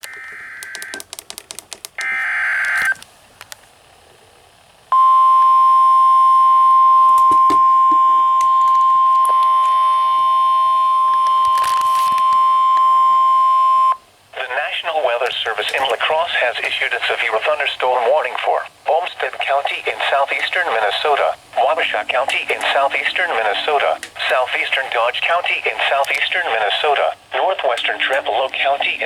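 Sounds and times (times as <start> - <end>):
steady warning alarm tone: 0.0 - 1.0, 2.0 - 3.0, 4.9 - 14.0.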